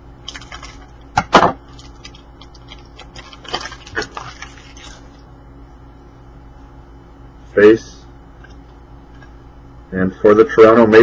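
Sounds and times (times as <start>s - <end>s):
wrapper crinkling: 0.2s - 1.1s, 1.7s - 5.2s
sharp loud wrapper crackles: 1.7s - 5.1s.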